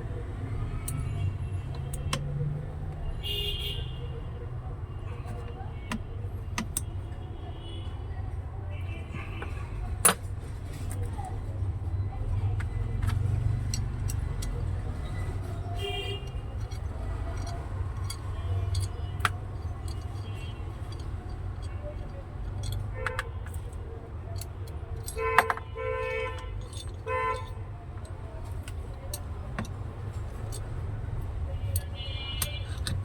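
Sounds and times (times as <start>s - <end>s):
horn honks: 3.1s - 4.1s, 25.2s - 27.7s
small metal parts clinking: 12.5s - 33.0s.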